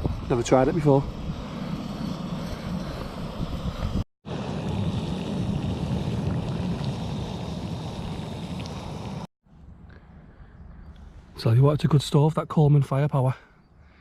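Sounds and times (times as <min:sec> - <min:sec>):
gas stove burner roaring: 0:04.3 - 0:09.3.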